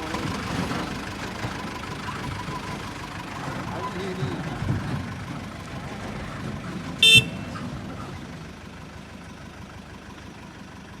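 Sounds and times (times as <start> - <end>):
diesel engine running: 0.0 - 11.0
truck horn toot: 7.0 - 7.6.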